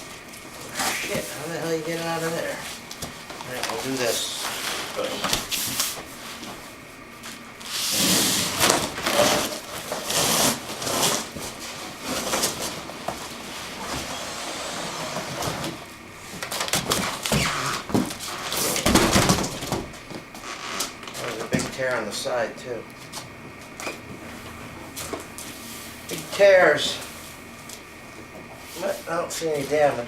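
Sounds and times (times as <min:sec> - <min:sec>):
cardboard scraping and rustling: 0:07.3 - 0:20.0.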